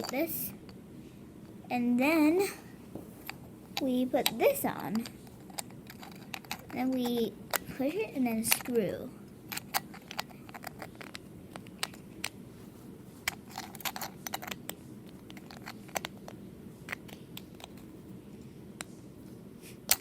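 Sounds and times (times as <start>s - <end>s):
flashlight parts clicking and scraping: 5.4s - 6.8s, 9.5s - 12.0s, 13.2s - 16.3s.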